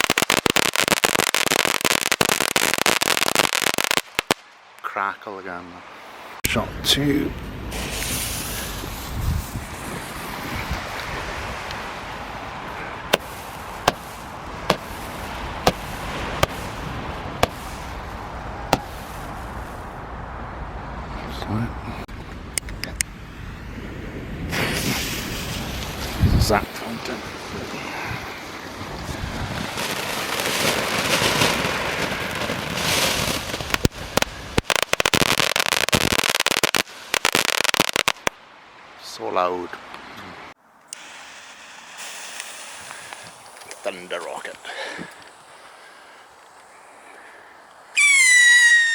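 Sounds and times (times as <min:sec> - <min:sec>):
firework bangs: 0:00.0 - 0:04.4, 0:13.1 - 0:18.0, 0:18.7 - 0:19.3, 0:29.5 - 0:38.3, 0:41.0 - 0:44.2, 0:48.0 - 0:48.9
sharp crackling pops: 0:00.0 - 0:04.6, 0:13.1 - 0:18.0, 0:18.7 - 0:19.3, 0:30.4 - 0:38.4, 0:40.8 - 0:46.8, 0:47.7 - 0:48.9
wind noise on microphone: 0:07.4 - 0:21.1, 0:21.8 - 0:30.6.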